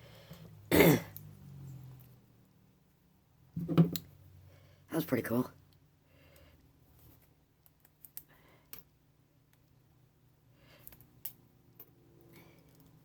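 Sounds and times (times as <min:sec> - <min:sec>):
faint clicks of small parts: 0:05.6 - 0:09.8, 0:10.6 - 0:13.0.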